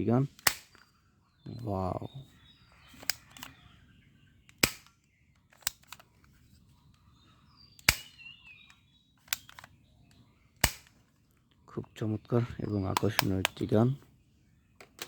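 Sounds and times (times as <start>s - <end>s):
toy gun shots: 4.6s - 4.9s, 7.8s - 8.1s, 10.6s - 10.9s
light clicks: 7.8s - 11.6s.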